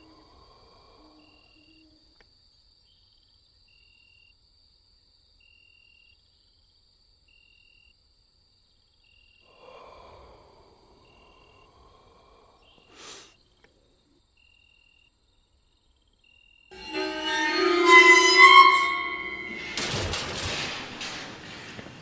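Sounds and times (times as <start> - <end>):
cricket-like chirp: 2.4 - 19.5
high insect drone: 16.8 - 20.4.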